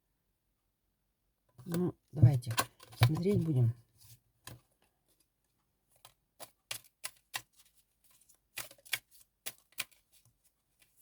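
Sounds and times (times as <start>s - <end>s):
cards being shuffled: 6.0s - 11.0s.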